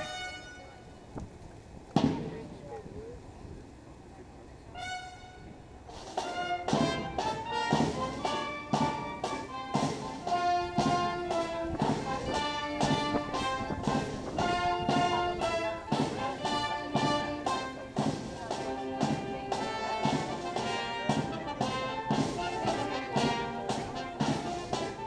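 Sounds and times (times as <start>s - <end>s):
brass playing march tune: 0.0s - 1.0s, 4.7s - 25.0s
drum beat: 5.9s - 25.0s.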